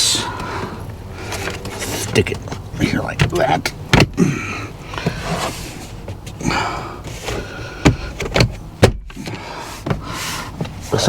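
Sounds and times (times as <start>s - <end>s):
scraping and rustling: 1.2s - 3.5s, 4.9s - 6.4s.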